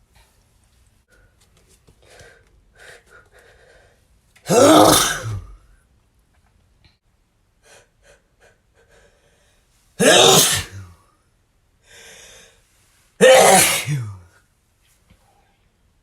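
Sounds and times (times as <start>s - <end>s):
man sneezing: 4.5s - 5.5s, 10.0s - 10.9s, 13.2s - 14.2s
drawn-in breath: 11.8s - 12.8s.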